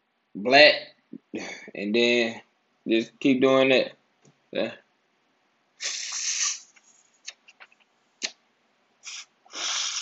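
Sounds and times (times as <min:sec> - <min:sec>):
hissing rushes of sucked air: 0:05.8 - 0:06.7, 0:09.0 - 0:10.0
sharp mouth clicks: 0:09.1 - 0:10.0.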